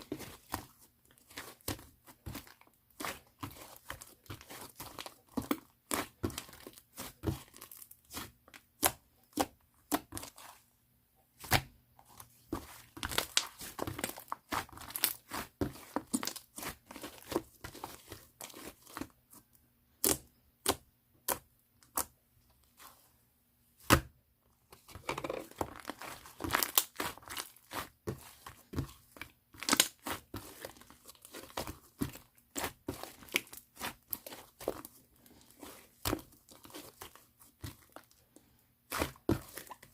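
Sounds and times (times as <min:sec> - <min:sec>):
slime squishing and popping: 0:12.6 - 0:17.4, 0:25.5 - 0:28.9, 0:29.6 - 0:34.8.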